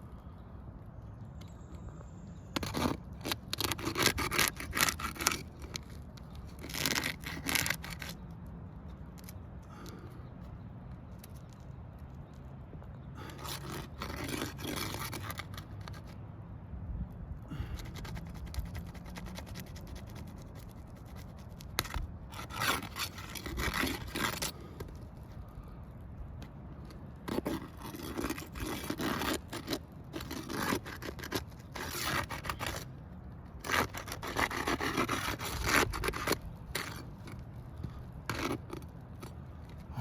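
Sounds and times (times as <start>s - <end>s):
shingles scraping and tearing: 2.5s - 8.3s, 13.2s - 16.2s, 17.5s - 25.4s, 26.8s - 40.0s.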